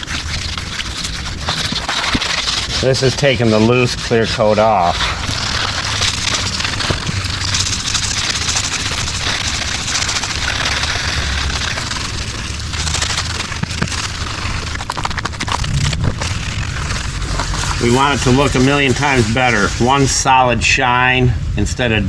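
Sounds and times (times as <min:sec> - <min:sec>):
scraping clear coat: 0:00.0 - 0:20.6.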